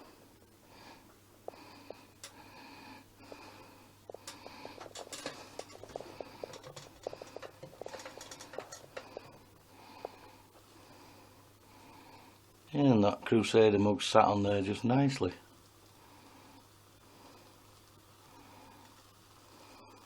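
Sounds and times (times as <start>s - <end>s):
soft breathing: 0.0s - 12.6s, 15.8s - 20.0s
camping stove clicking and ticking: 1.5s - 2.5s, 4.0s - 10.5s.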